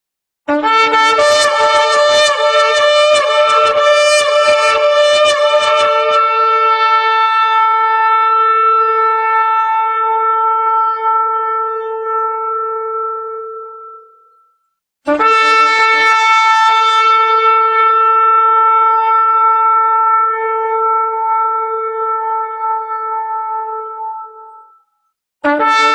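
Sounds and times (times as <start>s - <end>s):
shofar blast: 0.5s - 14.3s, 15.1s - 24.8s, 25.4s - 25.9s.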